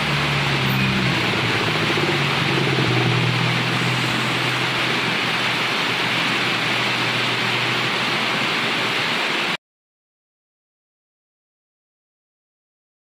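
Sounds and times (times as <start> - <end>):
passing vehicle hum: 0.0 - 9.5
rain hiss: 0.0 - 9.6.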